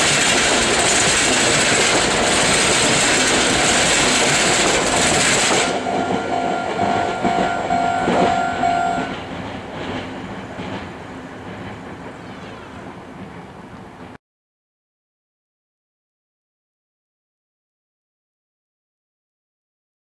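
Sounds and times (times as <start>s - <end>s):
train wheel and rail noise: 0.0s - 14.2s
crossing alarm bell ringing: 0.1s - 9.3s.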